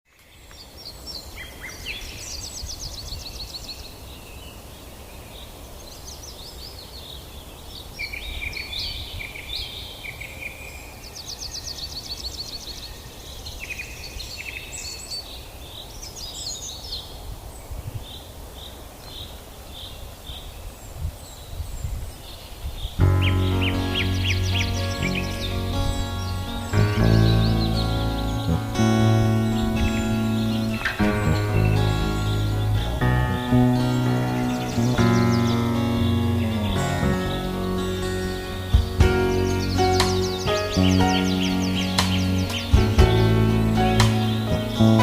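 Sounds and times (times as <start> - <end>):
birds singing: 21.3 - 45.0.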